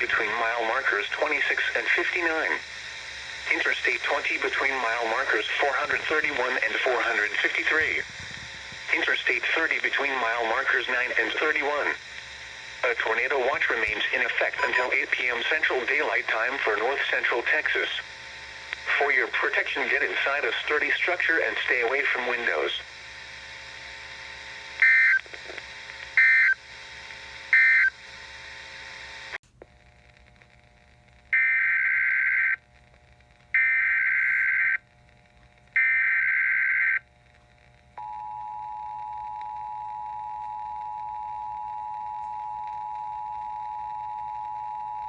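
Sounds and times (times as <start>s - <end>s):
steady attention tone: 0.0s - 21.0s.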